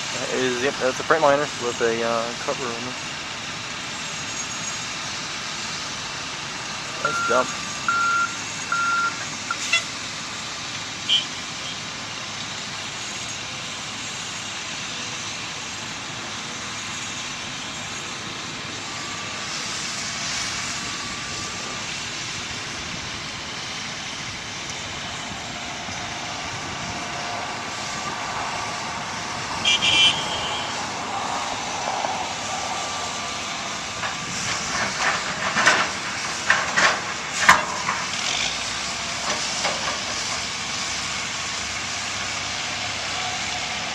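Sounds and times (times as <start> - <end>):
heavy diesel machinery running: 0.0 - 43.9
short high beep: 7.1 - 9.7.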